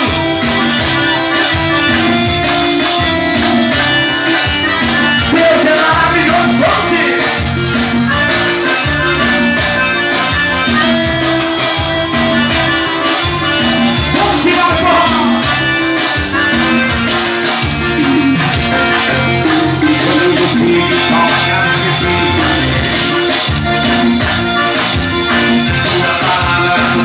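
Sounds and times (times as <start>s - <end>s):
accordion melody: 0.0s - 27.0s
bass and drum beat: 0.0s - 27.0s
person singing: 5.2s - 7.4s, 14.0s - 15.7s, 17.9s - 23.2s, 25.7s - 27.0s.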